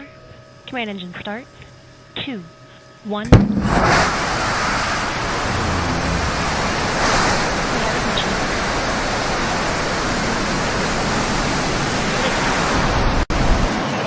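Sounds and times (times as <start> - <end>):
rocket engine roaring: 3.2 - 13.7.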